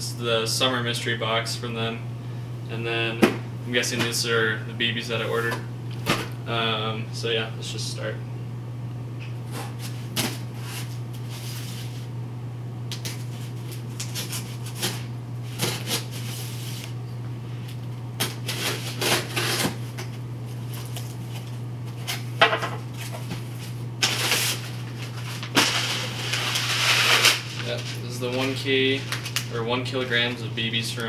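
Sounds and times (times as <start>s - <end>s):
steady low hum: 0.0s - 31.0s
packing rustling: 24.0s - 29.6s.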